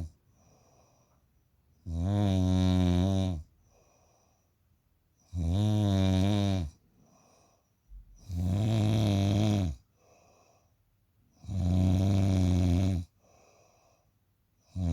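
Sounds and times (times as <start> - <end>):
soft breath: 0.2 - 1.5, 3.6 - 4.8, 6.9 - 8.2, 9.9 - 11.0, 13.1 - 14.3
person snoring: 8.2 - 9.8, 11.4 - 13.1.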